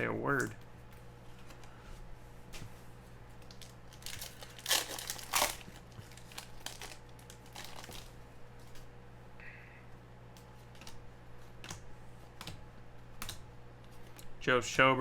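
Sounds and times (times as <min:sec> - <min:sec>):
plastic wrapper tearing and crinkling: 0:03.4 - 0:08.1.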